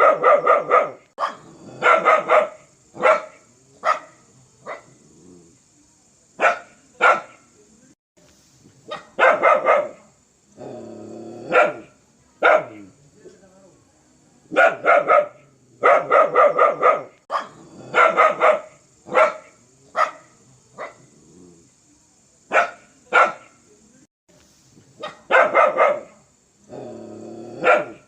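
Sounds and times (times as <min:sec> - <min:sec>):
dog barking: 0:00.0 - 0:05.0, 0:06.4 - 0:07.4, 0:08.9 - 0:10.1, 0:11.5 - 0:12.9, 0:14.5 - 0:21.1, 0:22.5 - 0:23.6, 0:25.0 - 0:26.2, 0:27.6 - 0:28.0
dog growling: 0:01.3 - 0:02.1, 0:04.9 - 0:05.6, 0:10.6 - 0:11.8, 0:17.4 - 0:18.4, 0:21.0 - 0:21.7, 0:26.7 - 0:28.0.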